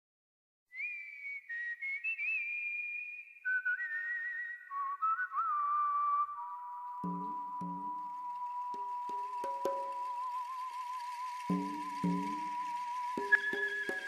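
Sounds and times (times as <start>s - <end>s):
thin whistling tone: 0.7s - 14.0s.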